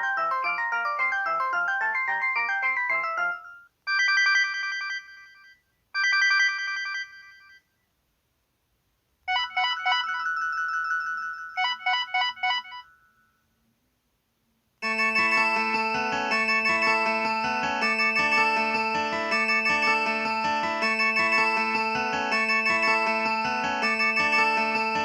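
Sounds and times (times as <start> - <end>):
phone ringtone melody: 0.0 - 7.6, 9.3 - 13.4, 14.8 - 25.0
electronic alert with rapid beeps: 11.5 - 12.9.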